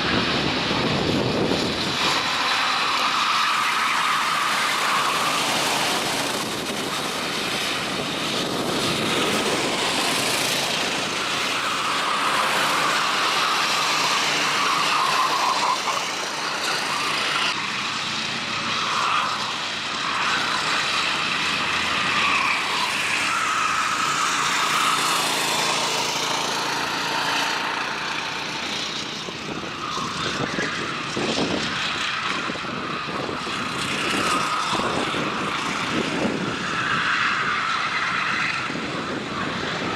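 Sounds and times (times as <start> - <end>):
racing kart engines: 0.0 - 39.9.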